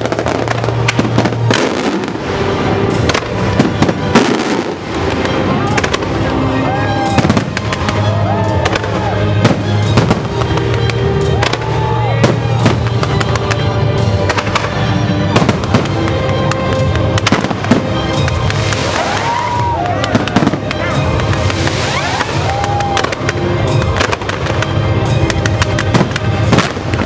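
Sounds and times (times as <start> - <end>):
fireworks banging: 0.0 - 27.0
music playing: 0.0 - 27.0
firework whistles: 21.4 - 23.4.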